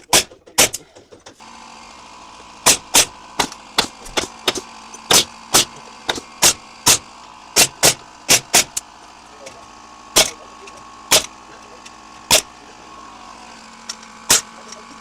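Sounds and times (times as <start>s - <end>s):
hammering on wood: 0.0s - 1.4s, 2.6s - 8.8s, 11.1s - 11.3s
steady machine hum: 1.3s - 15.0s.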